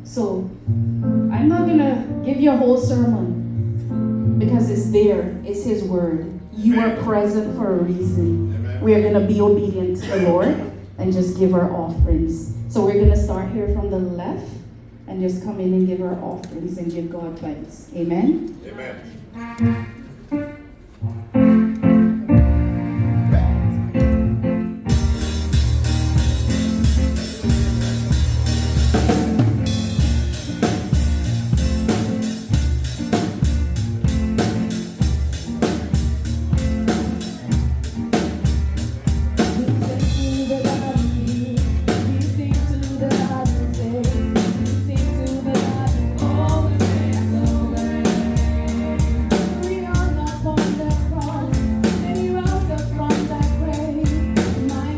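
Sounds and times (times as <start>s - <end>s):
gospel music with drums: 22.2s - 54.9s.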